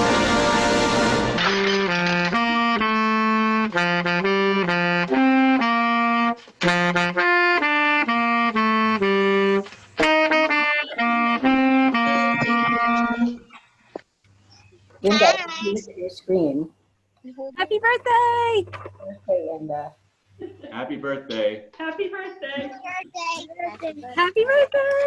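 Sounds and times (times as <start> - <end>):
instrumental melody of held notes: 0.0 - 13.5.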